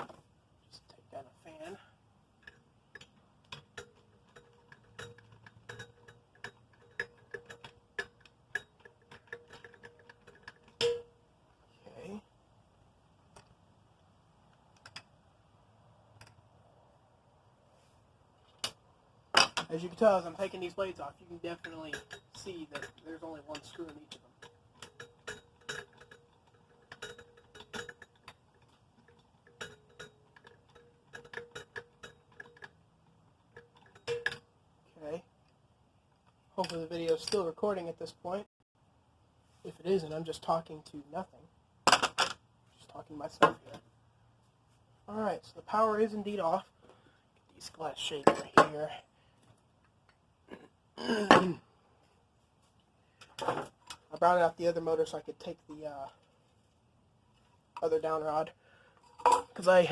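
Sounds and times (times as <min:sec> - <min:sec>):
light clicks and metallic clinks: 0:02.3 - 0:11.2, 0:19.4 - 0:34.6, 0:36.2 - 0:37.6.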